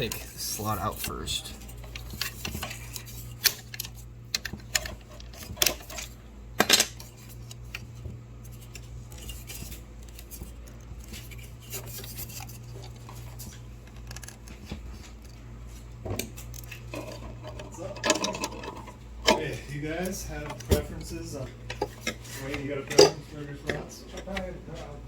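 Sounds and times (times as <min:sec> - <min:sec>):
tools clicking on plastic parts: 0:01.8 - 0:07.8.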